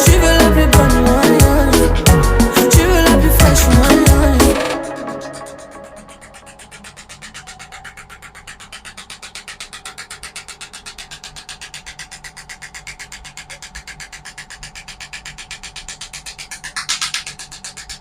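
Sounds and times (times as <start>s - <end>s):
background music: 0.0s - 6.8s
rapid sharp clicks of device: 4.6s - 18.0s.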